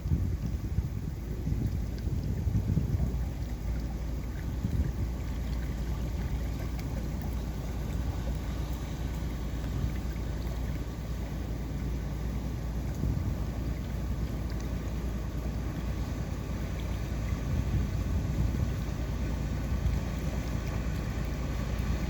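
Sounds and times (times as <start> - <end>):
passing vessel rumble: 0.0 - 22.0
wind buffeting microphone: 0.0 - 22.0.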